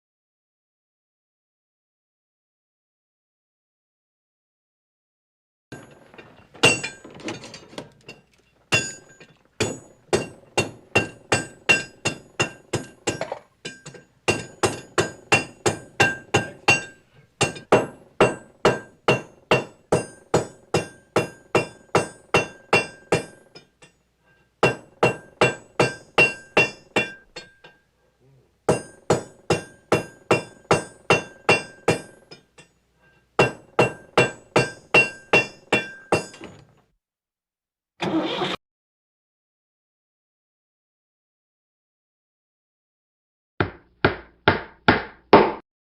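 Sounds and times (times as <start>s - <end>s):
hammer blows with metallic ring: 8.7s - 27.8s, 28.7s - 36.6s.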